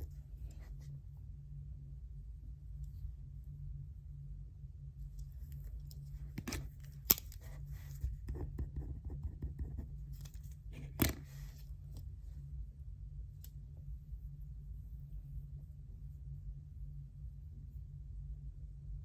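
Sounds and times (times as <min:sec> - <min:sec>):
low room hum: 0:00.0 - 0:19.0.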